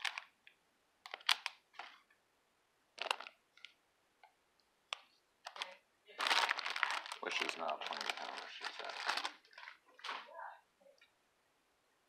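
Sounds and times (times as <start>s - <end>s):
plastic lego pieces clicking: 1.1s - 1.6s.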